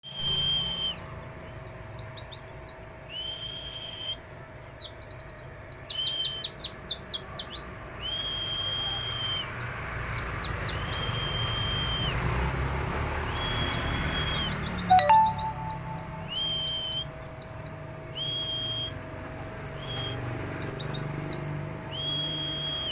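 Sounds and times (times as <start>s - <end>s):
bird singing high chirps: 13.3s - 17.2s, 20.8s - 22.9s.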